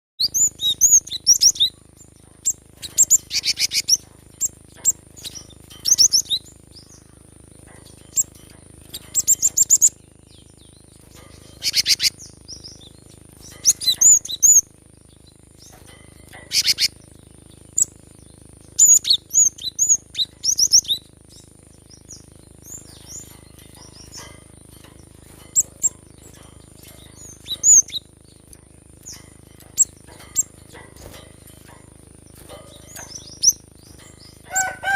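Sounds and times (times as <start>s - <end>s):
bird chirps and rattling trills: 0.2s - 34.9s
low hum: 0.2s - 34.9s.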